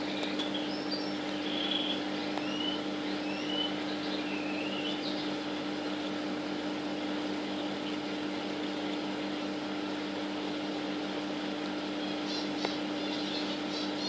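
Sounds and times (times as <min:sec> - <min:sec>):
faint bird chirp: 0:00.0 - 0:05.4, 0:12.0 - 0:14.0
mechanical hum with drone: 0:00.0 - 0:14.0.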